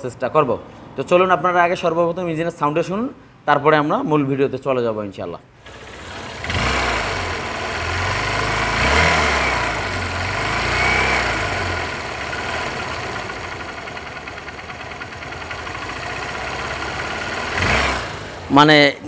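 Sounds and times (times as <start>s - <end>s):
motorcycle engine idling: 5.6s - 18.5s
fast ticking rattle: 11.4s - 17.7s.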